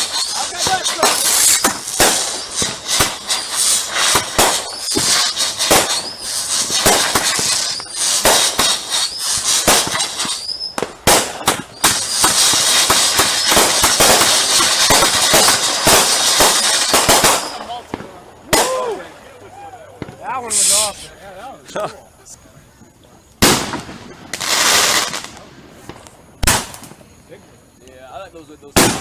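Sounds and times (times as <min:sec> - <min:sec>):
firework whistles rising: 0:00.0 - 0:17.9, 0:18.5 - 0:21.1, 0:23.4 - 0:27.1
firework bangs: 0:00.0 - 0:21.1, 0:23.4 - 0:27.6, 0:28.7 - 0:29.0
firework crackle: 0:00.0 - 0:21.1, 0:23.3 - 0:29.0.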